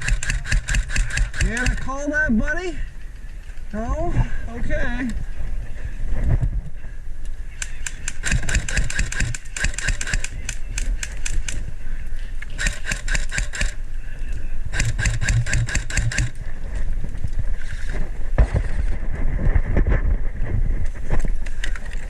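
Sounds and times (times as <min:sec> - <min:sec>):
airsoft gun full-auto clicking shots: 0:00.0 - 0:01.9, 0:07.6 - 0:11.6, 0:12.6 - 0:13.8, 0:14.7 - 0:16.4
gearbox motor humming: 0:12.6 - 0:13.8, 0:14.8 - 0:16.4.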